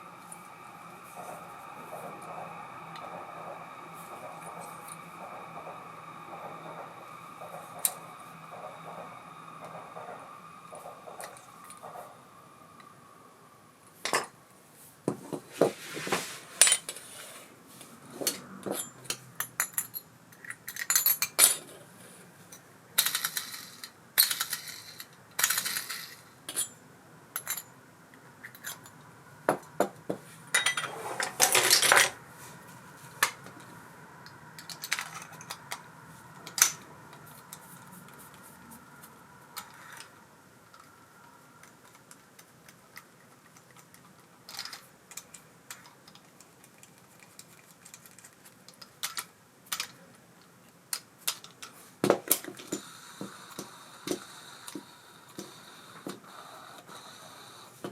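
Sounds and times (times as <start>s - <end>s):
small metal parts clinking: 18.8s - 21.6s.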